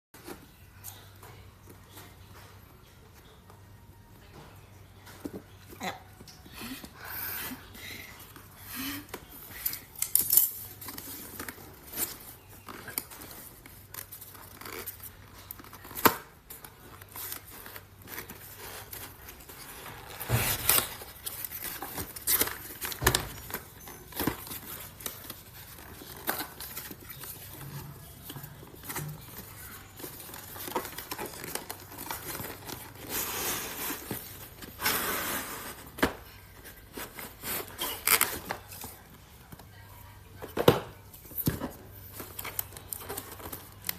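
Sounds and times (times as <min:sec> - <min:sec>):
plastic wrap crinkling: 0:10.6 - 0:34.8
packaging rustling: 0:10.6 - 0:39.1.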